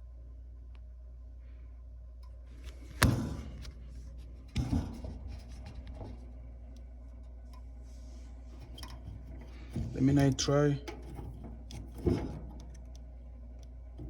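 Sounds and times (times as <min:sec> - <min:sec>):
low steady hum: 0:00.0 - 0:14.0
scraping: 0:02.6 - 0:13.0
knocks on heater controls: 0:02.9 - 0:03.7, 0:04.5 - 0:06.2.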